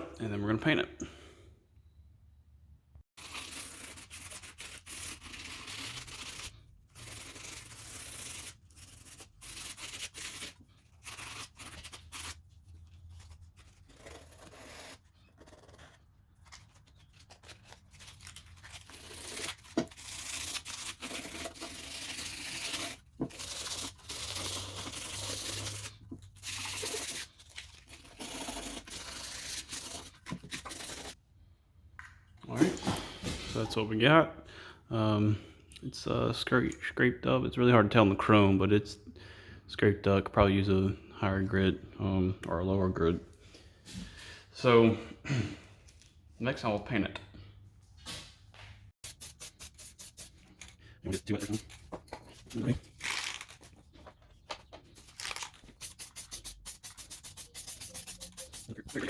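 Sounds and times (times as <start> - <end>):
sandpaper rubbing on metal: 3.2 - 15.0, 18.0 - 31.2, 49.0 - 51.7, 55.0 - 59.0.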